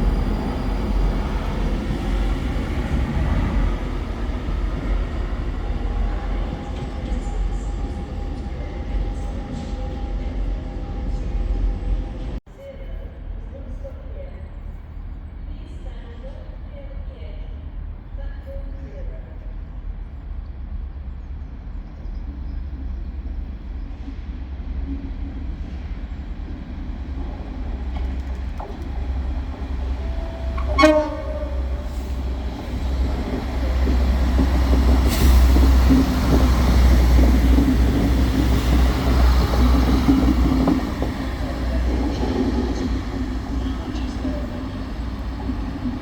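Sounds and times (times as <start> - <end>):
train rumble: 0.0 - 46.0
train wheel and rail noise: 0.0 - 46.0
train horn toot: 30.0 - 32.6.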